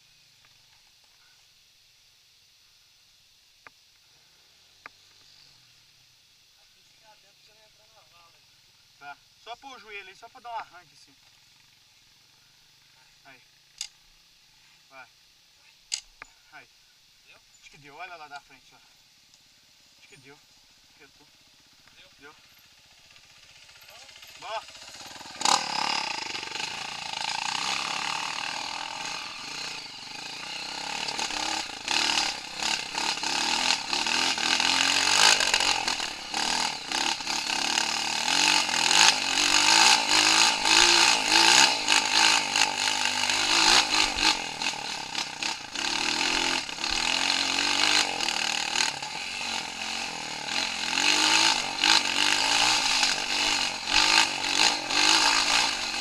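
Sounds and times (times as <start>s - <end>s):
motorcycle engine revving: 21.0s - 56.0s.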